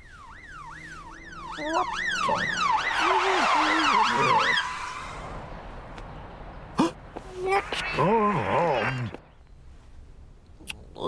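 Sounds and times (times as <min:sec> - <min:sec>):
emergency vehicle siren wailing: 0:00.0 - 0:05.7.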